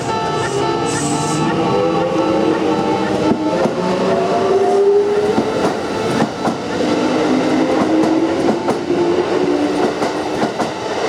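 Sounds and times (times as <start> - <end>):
steady train whine: 0.0 - 11.0
train wheels clacking over rail joints: 4.8 - 9.0, 9.6 - 10.8.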